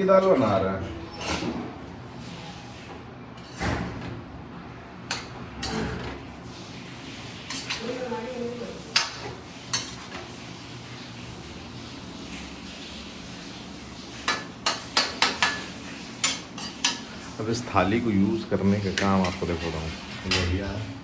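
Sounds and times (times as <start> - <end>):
utensils and pots clattering: 0.0 - 4.3, 4.9 - 10.7, 13.9 - 17.7, 18.9 - 21.0.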